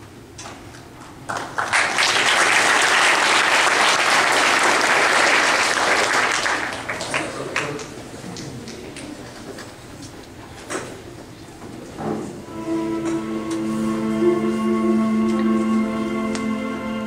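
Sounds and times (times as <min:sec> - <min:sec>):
audience applauding: 0:01.3 - 0:09.1.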